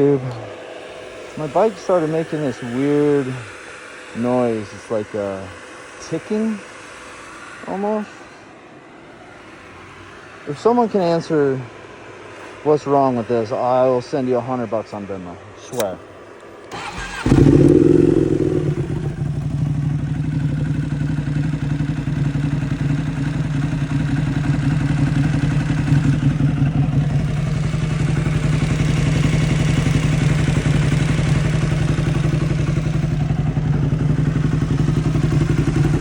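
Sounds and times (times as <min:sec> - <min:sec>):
engine ticking clatter: 0:16.7 - 0:36.0
motorcycle engine idling: 0:16.7 - 0:36.0.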